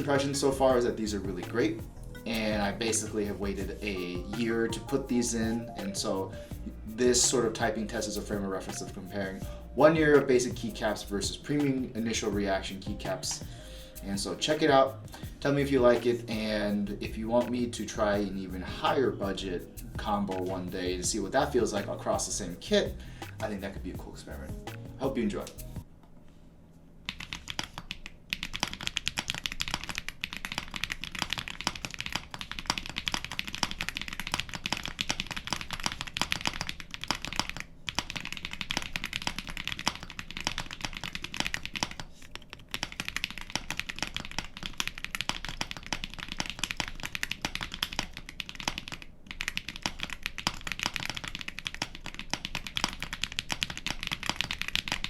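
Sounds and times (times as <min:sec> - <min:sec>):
mechanical keyboard typing: 0:27.1 - 0:55.0.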